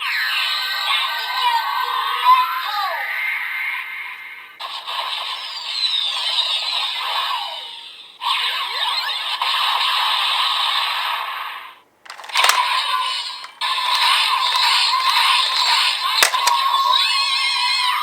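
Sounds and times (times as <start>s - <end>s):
sharp clicks: 12.1s - 16.8s.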